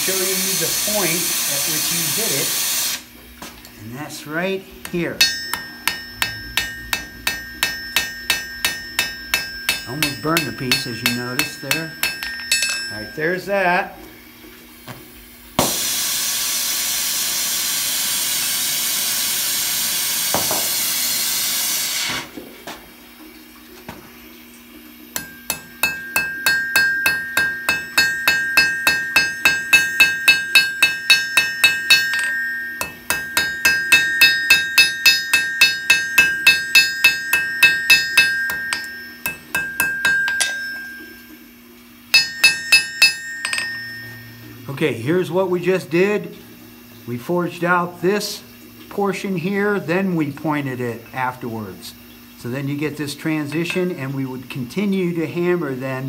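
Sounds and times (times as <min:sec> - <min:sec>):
gas torch hissing: 0:00.0 - 0:03.1, 0:15.6 - 0:22.3
anvil ringing: 0:04.8 - 0:13.5, 0:25.2 - 0:41.3, 0:42.1 - 0:44.5
hammer blows on hot steel: 0:05.2 - 0:13.2.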